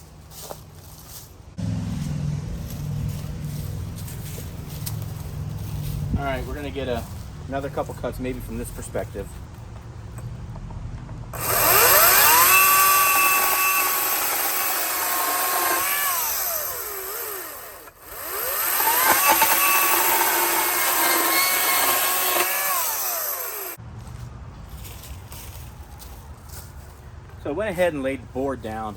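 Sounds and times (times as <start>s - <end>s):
battery chainsaw cutting board: 11.3s - 23.8s.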